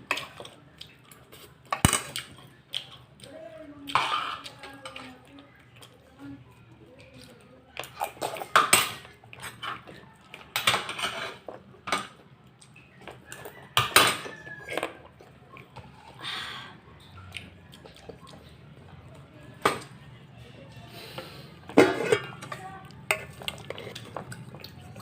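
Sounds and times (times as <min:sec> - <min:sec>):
eating noises: 0:00.0 - 0:10.5, 0:14.5 - 0:19.3, 0:21.0 - 0:25.0
cutlery scraping on plate: 0:03.9 - 0:05.0, 0:07.8 - 0:12.2, 0:13.0 - 0:15.1, 0:21.7 - 0:24.7.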